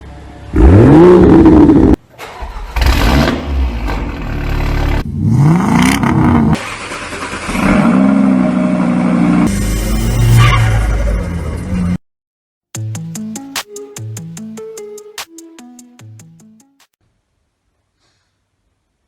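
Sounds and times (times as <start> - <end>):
car engines revving: 0.5 - 2.0.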